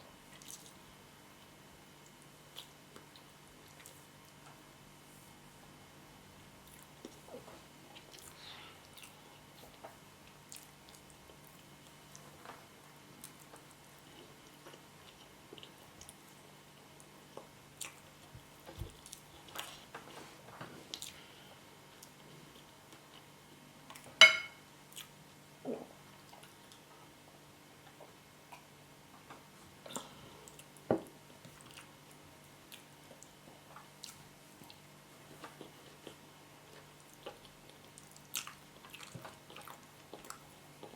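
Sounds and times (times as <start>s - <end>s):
chewing soft food: 0.2s - 4.6s, 6.6s - 24.2s, 24.8s - 27.2s, 29.4s - 40.9s.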